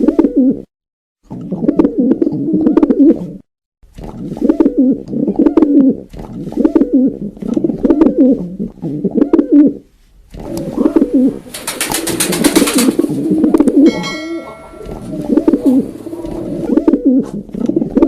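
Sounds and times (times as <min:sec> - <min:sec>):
pigeon cooing: 0:00.0 - 0:00.7, 0:01.3 - 0:03.4, 0:04.2 - 0:18.0
rapid sharp ticks: 0:11.5 - 0:13.0
high-pitched ringing: 0:13.8 - 0:16.7.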